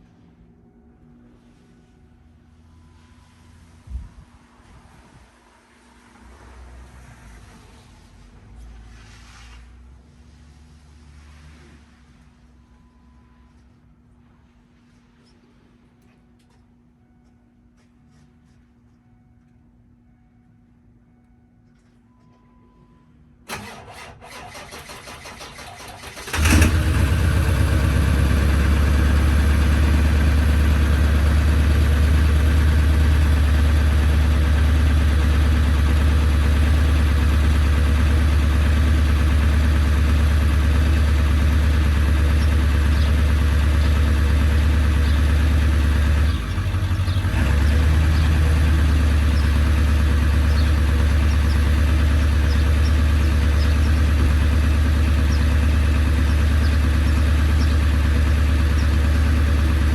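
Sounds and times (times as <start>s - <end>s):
diesel engine cranking on starter: 23.4s - 59.9s
diesel engine idling loudly: 23.5s - 59.9s.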